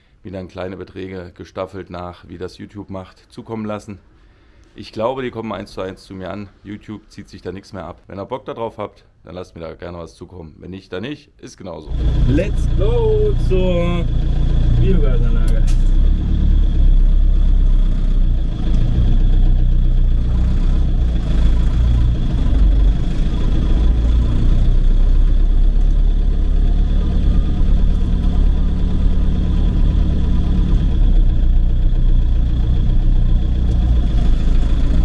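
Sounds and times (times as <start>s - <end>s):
tractor engine running: 11.9s - 35.0s.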